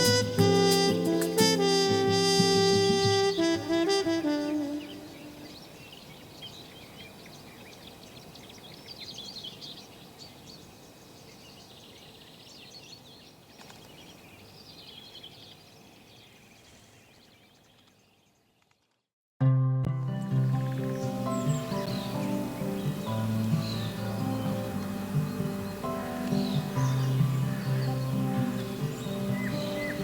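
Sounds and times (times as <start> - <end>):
music: 0.0 - 5.4, 19.4 - 30.0
faint outdoor background: 0.0 - 30.0
small birds chirping: 4.5 - 19.1, 20.3 - 30.0.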